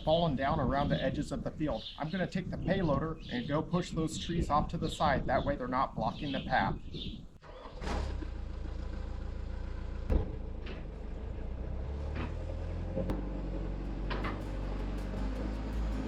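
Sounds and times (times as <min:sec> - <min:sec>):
loader engine running: 0:07.4 - 0:16.0.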